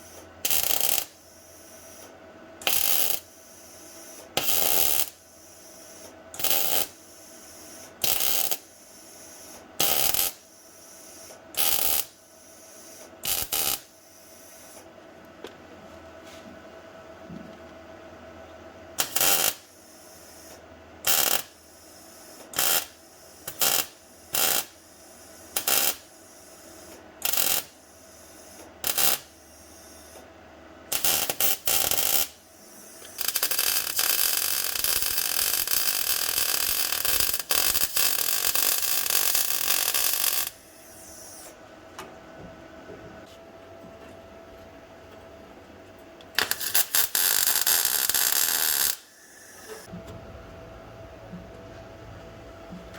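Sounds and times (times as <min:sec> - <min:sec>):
electric welding on steel: 0:00.0 - 0:14.9, 0:19.0 - 0:30.2, 0:30.9 - 0:41.6, 0:46.3 - 0:49.9.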